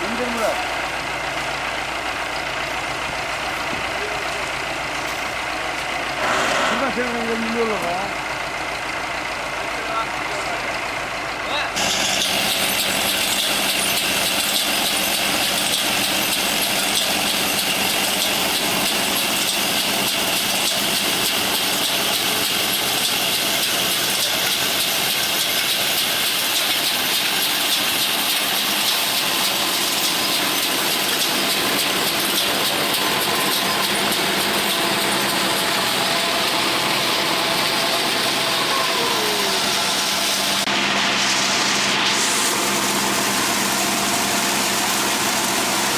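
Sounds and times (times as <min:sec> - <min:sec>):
farm machine engine drone: 0:00.0 - 0:45.9
strong hiss: 0:06.2 - 0:07.5.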